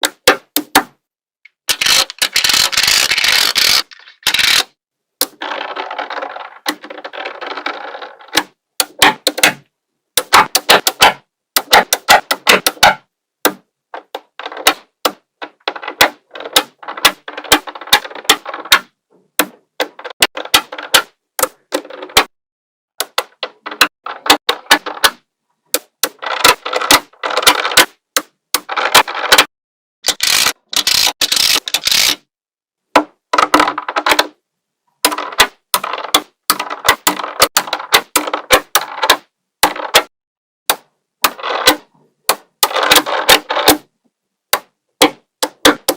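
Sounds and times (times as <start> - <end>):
balls rattling: 1.7 - 13.0.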